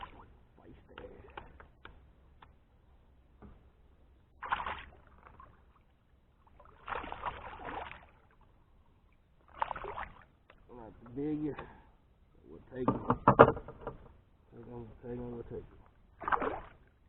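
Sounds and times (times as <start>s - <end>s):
fish splashing at water surface: 4.4s - 5.8s, 6.4s - 8.4s, 9.5s - 10.3s, 16.2s - 16.9s.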